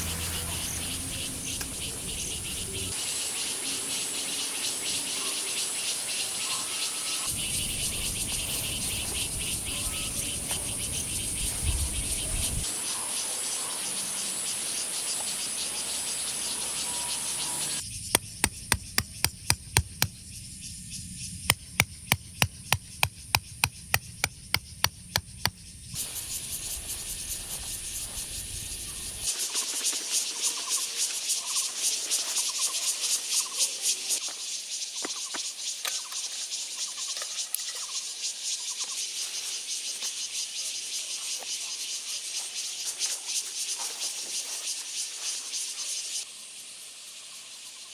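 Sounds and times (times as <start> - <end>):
night insects chirring: 0.0 - 47.9
sharp evenly spaced knocks: 18.2 - 20.2, 21.4 - 25.6.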